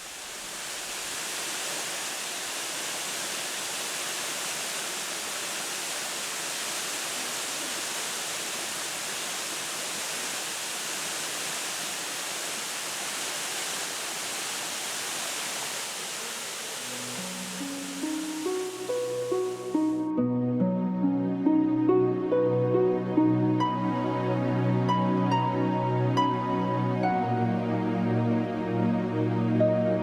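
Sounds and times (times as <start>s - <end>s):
waterfall rushing: 0.0s - 20.1s.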